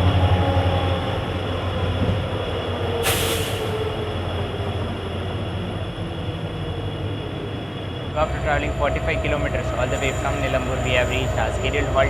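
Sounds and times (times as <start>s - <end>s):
train rumbling: 0.0s - 12.0s
short hiss: 3.0s - 3.7s
train wheel squeal: 6.7s - 12.0s.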